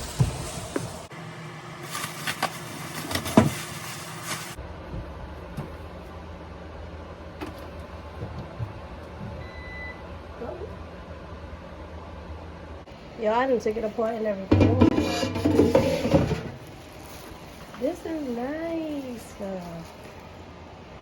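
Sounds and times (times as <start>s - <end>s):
packaging rustling: 1.8s - 4.6s, 16.6s - 20.4s.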